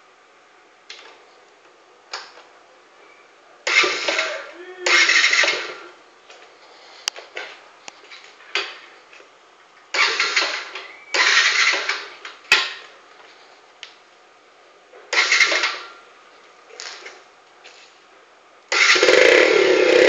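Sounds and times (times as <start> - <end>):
scooter engine cranking: 3.7 - 5.9, 9.9 - 12.8, 15.1 - 16.0, 18.7 - 20.0.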